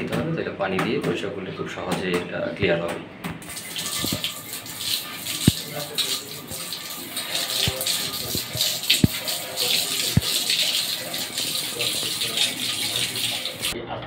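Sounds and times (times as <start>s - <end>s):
running water rinsing filter: 3.4s - 13.8s.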